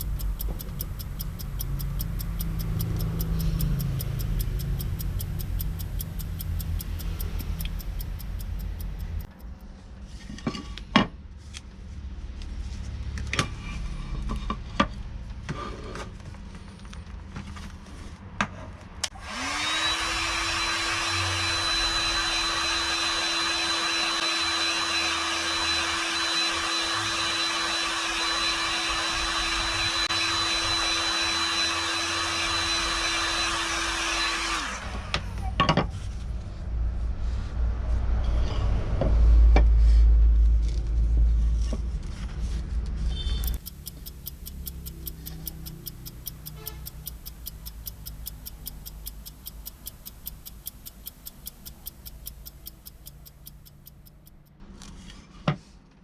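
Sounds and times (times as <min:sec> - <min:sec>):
sharp clicks and knocks: 0:00.0 - 0:09.7, 0:43.3 - 0:54.6
low rumble with rapid ticking: 0:00.0 - 0:09.9, 0:43.2 - 0:54.6
electric motor whine: 0:19.2 - 0:35.2.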